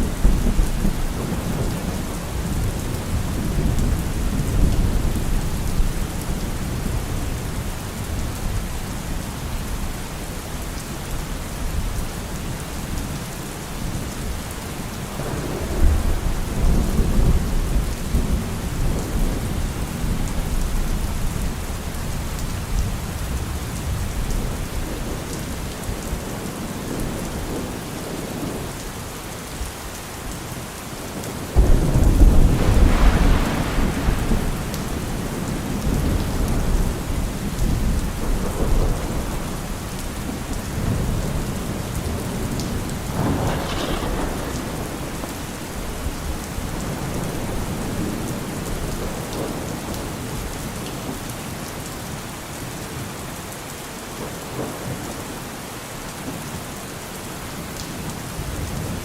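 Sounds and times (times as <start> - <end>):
thunder rumbling: 0.0 - 7.4, 31.6 - 50.5
steady rain falling: 0.0 - 59.0.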